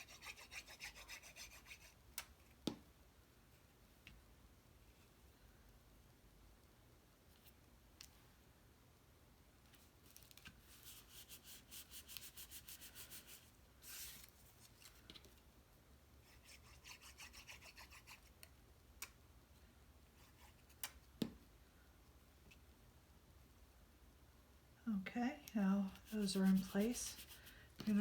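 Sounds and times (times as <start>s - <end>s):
card rubbing strokes: 25.9s - 28.0s.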